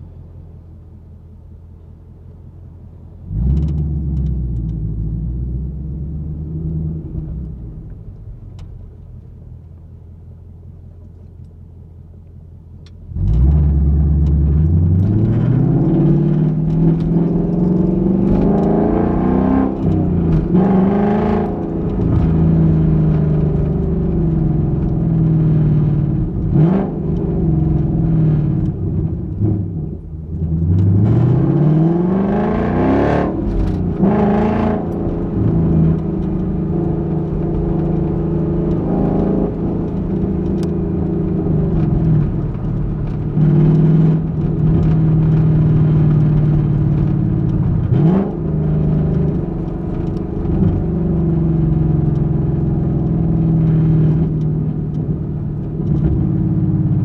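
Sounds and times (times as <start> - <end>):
car engine exhaust revving: 13.0 - 57.0.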